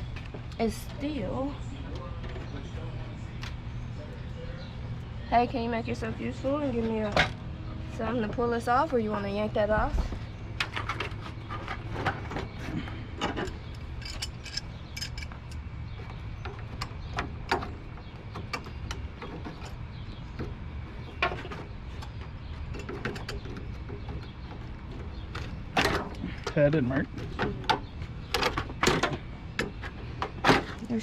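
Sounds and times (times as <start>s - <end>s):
low steady hum: 0.0s - 31.0s
hand tools clinking on metal: 13.2s - 15.7s.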